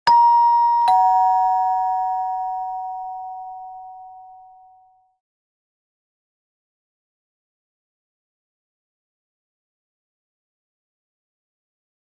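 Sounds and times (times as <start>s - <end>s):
two-tone doorbell chime: 0.1s - 5.1s.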